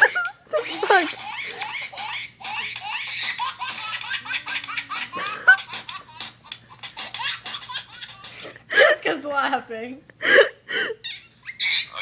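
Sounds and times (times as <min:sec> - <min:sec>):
high-pitched laughter ringtone: 0:00.0 - 0:06.1.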